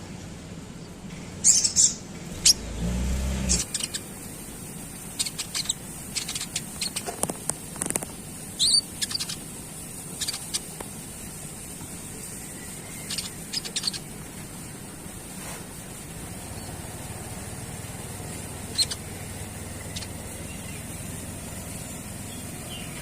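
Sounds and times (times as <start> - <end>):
bird chirps and chattering: 1.4 - 2.8, 3.5 - 14.8, 17.5 - 23.0.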